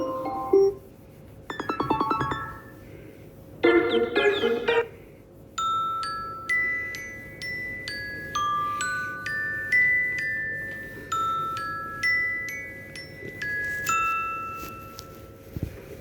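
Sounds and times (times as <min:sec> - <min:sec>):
bell-like ringtone melody: 0:00.0 - 0:00.8, 0:01.5 - 0:02.7, 0:05.6 - 0:15.5
loud ringtone chords: 0:00.0 - 0:00.8, 0:01.5 - 0:02.7.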